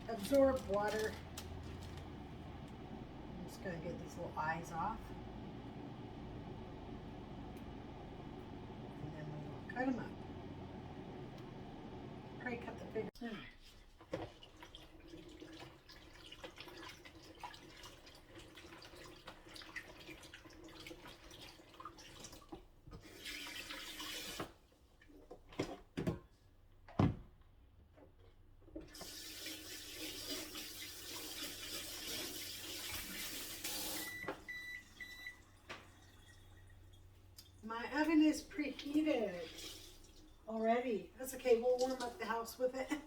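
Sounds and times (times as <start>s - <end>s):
kitchen tap running: 0.0s - 3.4s, 13.9s - 24.6s, 28.8s - 43.0s
oven short high beeps: 33.9s - 35.4s.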